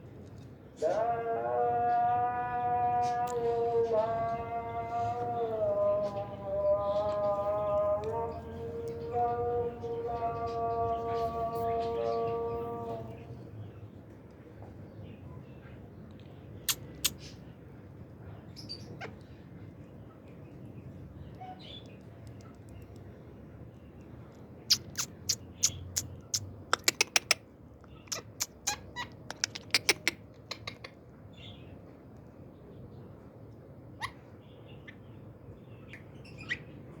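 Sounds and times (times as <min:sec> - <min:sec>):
parrot chirping and clicking: 0:24.7 - 0:27.4, 0:28.1 - 0:30.8.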